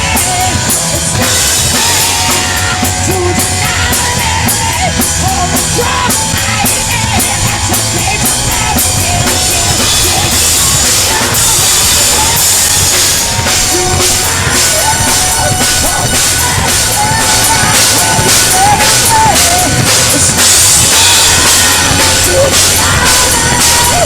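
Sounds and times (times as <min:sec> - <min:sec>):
drum kit hitting hard: 0:00.0 - 0:24.0
rock band playing: 0:00.0 - 0:24.0.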